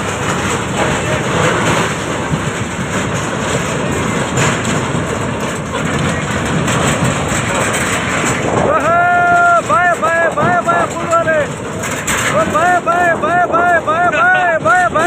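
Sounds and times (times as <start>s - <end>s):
floodwater roaring: 0.0s - 15.0s.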